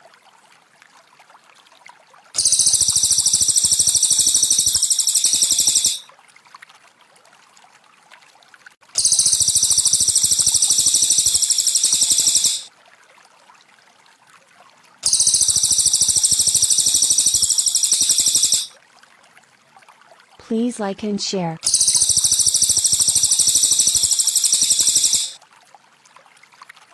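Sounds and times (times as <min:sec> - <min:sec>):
faint trickle of water: 0:00.0 - 0:04.8, 0:06.0 - 0:09.0, 0:12.7 - 0:16.3, 0:18.7 - 0:21.7, 0:25.4 - 0:26.9
bird rapid high trill: 0:02.4 - 0:06.0, 0:09.0 - 0:12.7, 0:15.0 - 0:18.7, 0:21.6 - 0:25.4.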